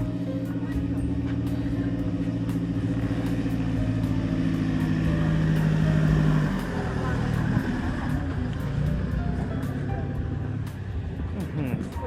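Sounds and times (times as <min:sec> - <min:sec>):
motorcycle engine running: 0:00.0 - 0:12.0
road and wind noise: 0:00.0 - 0:12.0.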